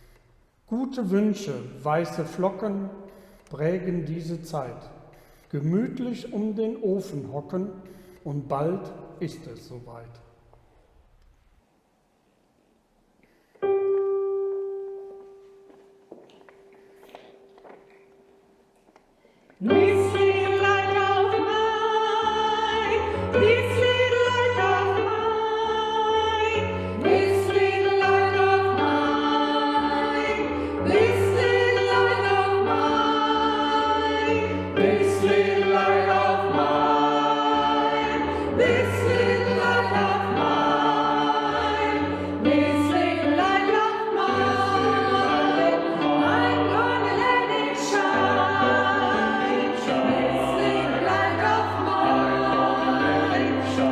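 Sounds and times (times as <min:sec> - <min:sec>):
choir singing: 0:19.6 - 0:53.9.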